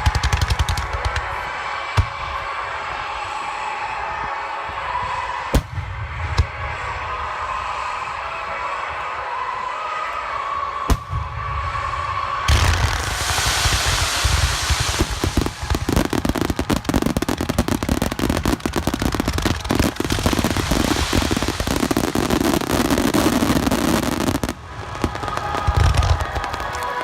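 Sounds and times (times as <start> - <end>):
fireworks crackling and banging: 0.0 - 8.8, 10.3 - 27.0.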